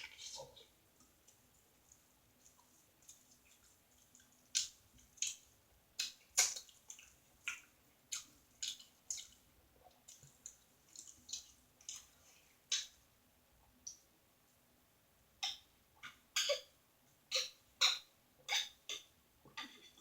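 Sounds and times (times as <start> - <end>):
wet chewing and lip-smacking: 1.2 - 12.9.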